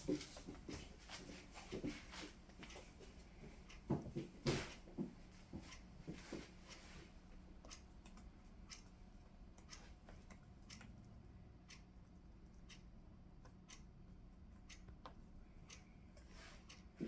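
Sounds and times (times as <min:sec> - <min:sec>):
beaks pecking and clicking: 0:06.7 - 0:17.0.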